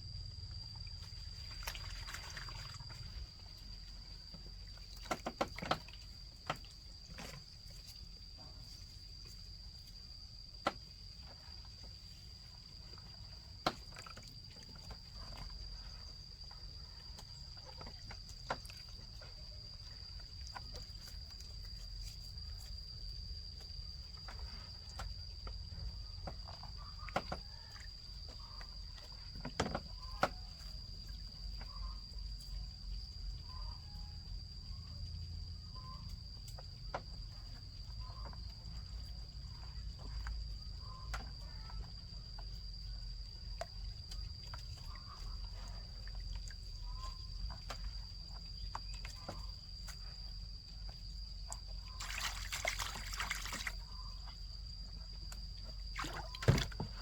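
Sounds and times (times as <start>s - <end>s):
faint animal or bird calls: 33.4s - 35.0s, 35.6s - 36.2s, 37.9s - 42.2s.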